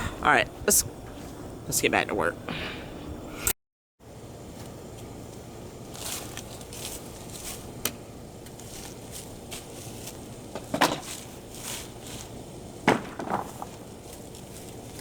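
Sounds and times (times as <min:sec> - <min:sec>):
sharp knocks on wood: 0:12.9 - 0:13.7.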